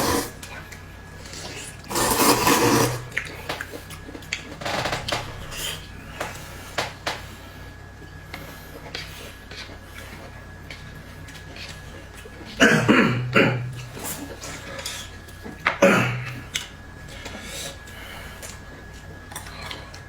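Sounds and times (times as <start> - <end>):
loud dish scrape: 0.0 - 0.4, 1.9 - 3.1.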